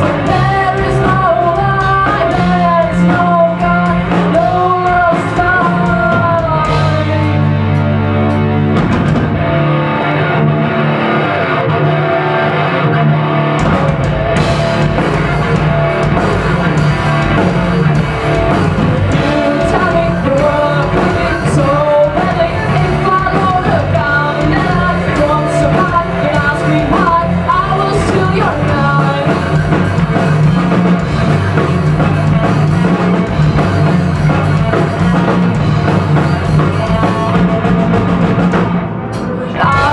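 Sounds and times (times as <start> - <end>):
woman singing: 0.0 - 7.5, 19.0 - 29.8, 39.2 - 39.9
drum kit: 0.0 - 39.9
electric guitar: 0.0 - 39.9.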